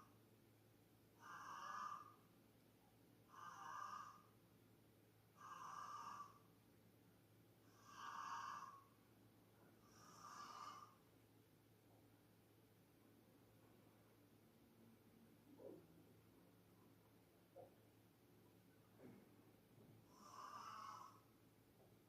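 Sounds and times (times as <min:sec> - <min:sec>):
person snoring faintly: 0:01.2 - 0:02.2, 0:03.3 - 0:04.4, 0:05.4 - 0:06.5, 0:07.6 - 0:09.0, 0:09.8 - 0:11.0, 0:20.0 - 0:21.3.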